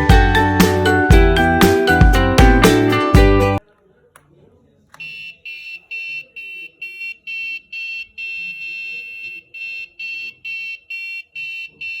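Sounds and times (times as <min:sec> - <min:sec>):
buzzer-like ringtone beeps: 0:05.0 - 0:12.0.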